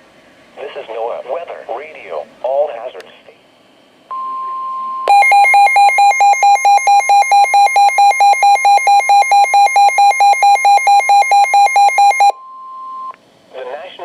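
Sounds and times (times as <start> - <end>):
steady warning tone: 5.1 - 12.3
weather radio pulsing alert beeps: 5.1 - 12.3.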